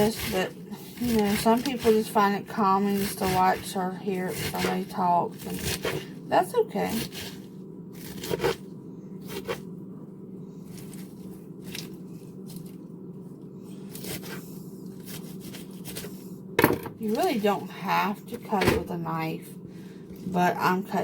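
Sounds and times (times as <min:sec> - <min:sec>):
knife slicing lettuce: 0:00.0 - 0:06.1, 0:06.8 - 0:07.4, 0:08.0 - 0:08.6, 0:09.2 - 0:09.6, 0:10.6 - 0:12.8, 0:13.7 - 0:16.2
steady low hum: 0:00.0 - 0:21.0.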